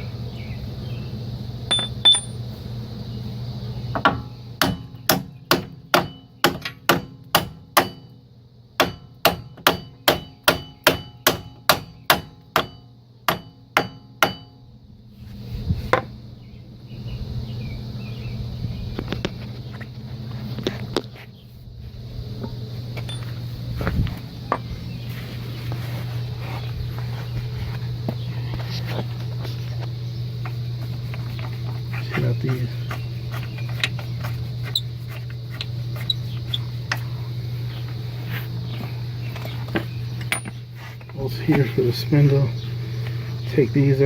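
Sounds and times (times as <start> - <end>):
hammer striking steel punch: 1.7 - 2.4, 4.1 - 8.1, 8.8 - 14.6.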